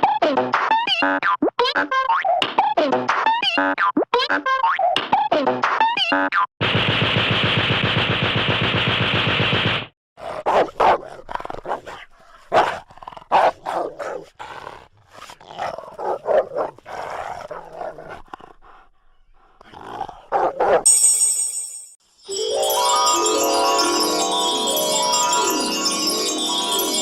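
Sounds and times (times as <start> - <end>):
cartoon dog barking: 10.2 - 11.9
cartoon dog growling: 10.2 - 20.8.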